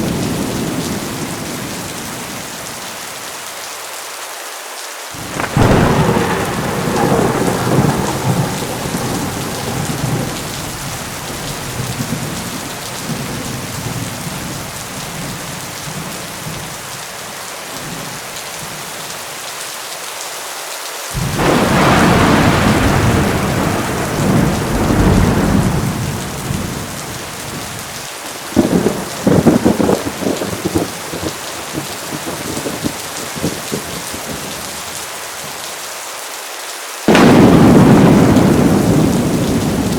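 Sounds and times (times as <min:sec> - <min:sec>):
thunder rumbling: 0:00.0 - 0:02.8, 0:05.2 - 0:16.9, 0:21.2 - 0:34.6, 0:37.1 - 0:39.9
heavy rain: 0:00.0 - 0:39.9
sharp thunder cracks: 0:05.2 - 0:14.6, 0:21.2 - 0:27.9, 0:37.1 - 0:39.9.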